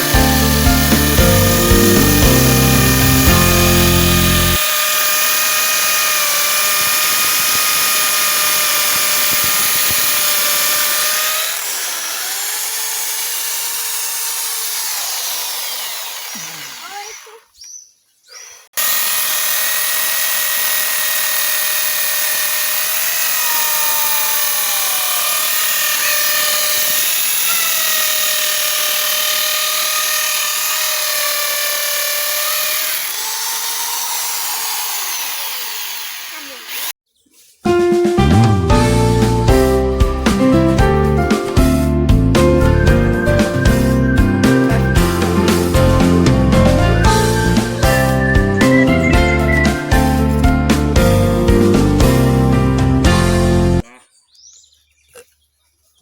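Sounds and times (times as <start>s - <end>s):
power tool motor whining: 0.0s - 17.4s, 18.8s - 37.0s, 42.4s - 50.4s.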